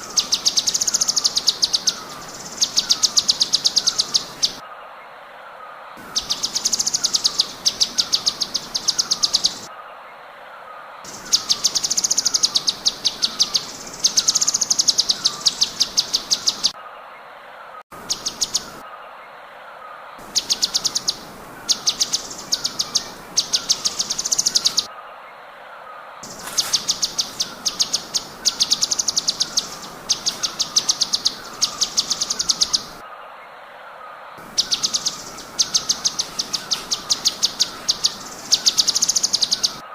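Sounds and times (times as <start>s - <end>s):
songbird singing rapid high notes: 0.0s - 4.6s, 6.0s - 9.7s, 11.1s - 16.8s, 20.2s - 24.9s, 26.2s - 33.0s, 34.4s - 39.9s
lower chirps: 20.2s - 24.9s, 26.2s - 33.0s, 34.4s - 39.8s.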